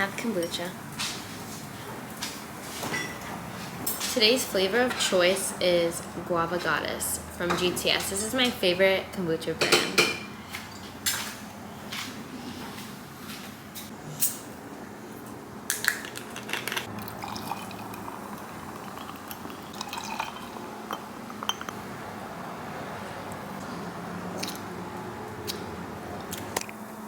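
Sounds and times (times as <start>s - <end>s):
glassware clinking: 2.9s - 3.3s, 9.6s - 10.8s, 17.0s - 21.8s
liquid pouring into a glass: 16.9s - 21.7s.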